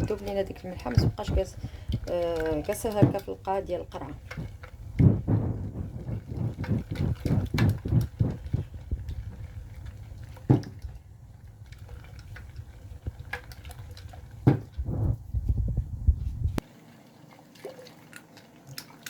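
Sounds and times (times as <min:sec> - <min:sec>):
liquid swishing in a jar: 0:00.0 - 0:19.0
knocks on a jar: 0:14.5 - 0:14.7.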